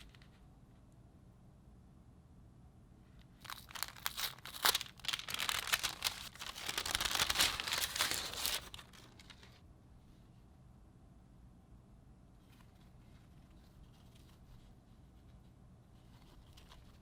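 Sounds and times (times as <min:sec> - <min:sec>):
packaging crinkling: 0:03.4 - 0:09.6.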